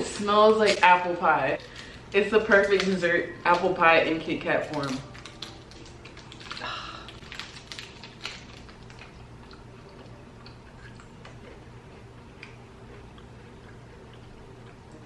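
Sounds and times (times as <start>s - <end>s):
low room hum: 0.0s - 15.0s
wafer crunching being chewed: 4.6s - 15.0s.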